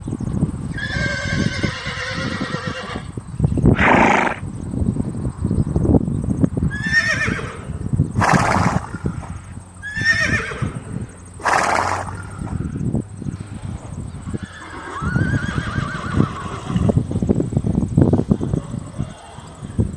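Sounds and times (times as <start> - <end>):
horse whinnying: 0.7 - 3.1, 3.7 - 4.4, 6.7 - 12.7, 14.3 - 17.0
horse snorting: 3.7 - 4.4, 7.2 - 9.5, 10.2 - 12.7.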